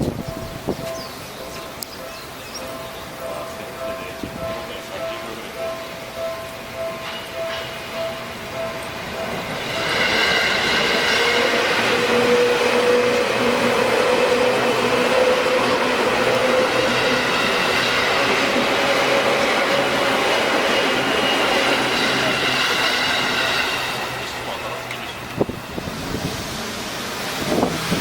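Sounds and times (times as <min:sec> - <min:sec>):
train wheels rumbling on rails: 0:00.0 - 0:28.0
train whining tones: 0:00.0 - 0:28.0.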